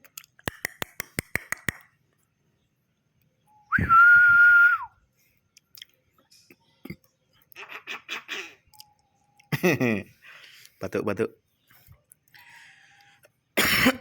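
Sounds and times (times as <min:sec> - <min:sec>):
steady whistle: 0:03.4 - 0:05.0.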